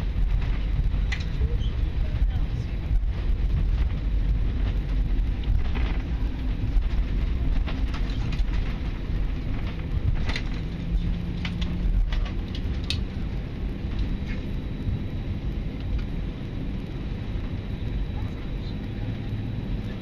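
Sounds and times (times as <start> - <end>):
aircraft cabin rumble: 0.0 - 20.0
light clicks and rattles: 0.3 - 13.1.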